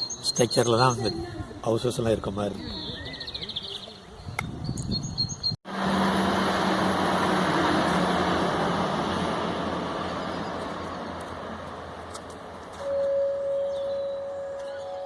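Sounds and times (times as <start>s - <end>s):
vehicle passing by: 5.7s - 15.0s.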